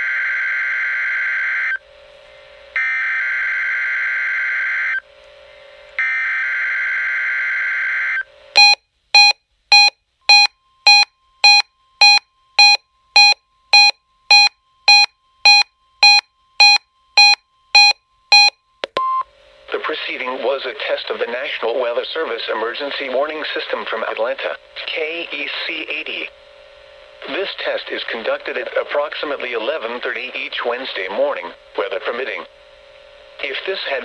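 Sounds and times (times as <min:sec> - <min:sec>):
fast loud alarm beeps: 0:08.6 - 0:18.6.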